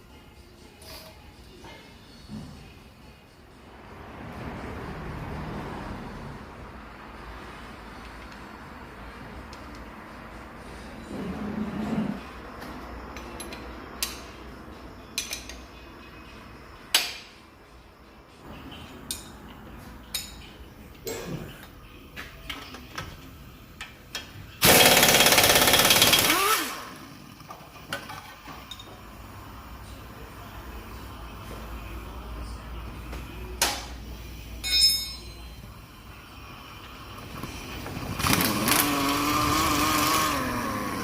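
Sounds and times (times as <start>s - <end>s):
pneumatic impact wrench hammering: 24.6s - 26.9s
tools and metal parts clanking: 27.8s - 29.0s, 34.6s - 35.5s.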